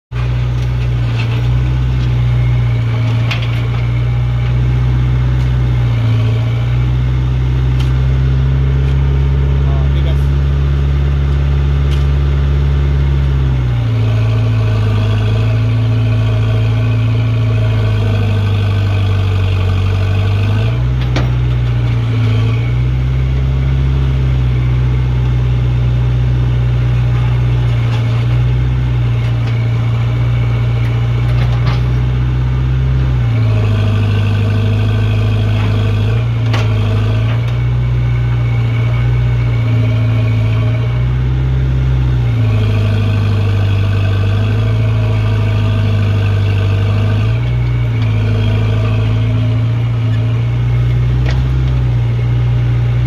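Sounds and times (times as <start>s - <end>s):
diesel engine running: 0.0s - 53.0s.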